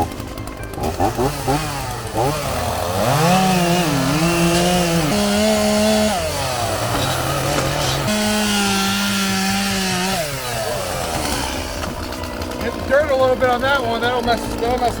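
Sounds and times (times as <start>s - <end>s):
chainsaw cutting: 0.0s - 15.0s.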